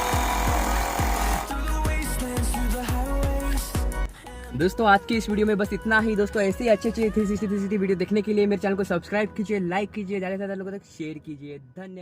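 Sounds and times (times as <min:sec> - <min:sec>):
drum beat: 0:00.0 - 0:02.6.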